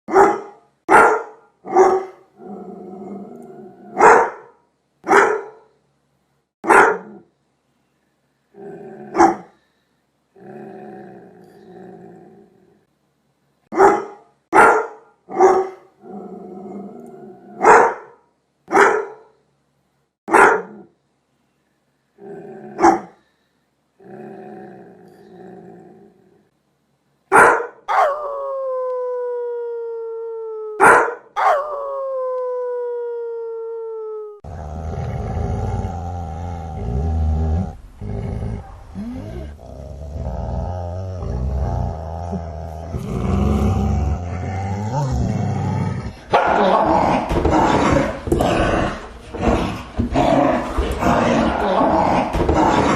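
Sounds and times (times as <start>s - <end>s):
dog barking: 0.1s - 2.2s, 4.0s - 5.7s, 6.6s - 7.3s, 9.1s - 9.5s, 13.7s - 15.9s, 17.6s - 19.3s, 20.3s - 20.9s, 22.8s - 23.2s, 27.3s - 28.2s, 30.8s - 31.7s, 46.3s - 46.9s
dog growling: 2.4s - 4.0s, 10.4s - 12.9s, 16.0s - 17.6s, 24.0s - 26.5s, 34.4s - 52.9s
dog howling: 27.9s - 45.8s.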